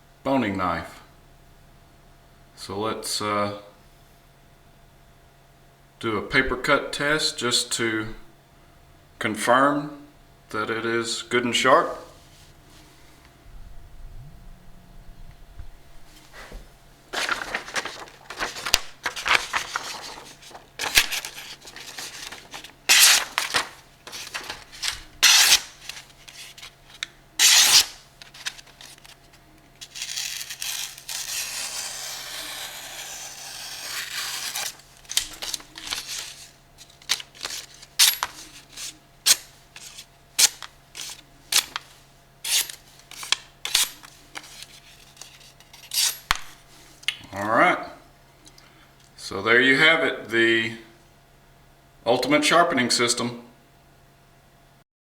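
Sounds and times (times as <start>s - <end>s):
faint low hum: 0.1s - 54.0s
knife slicing through paper: 17.2s - 29.2s, 29.8s - 46.6s.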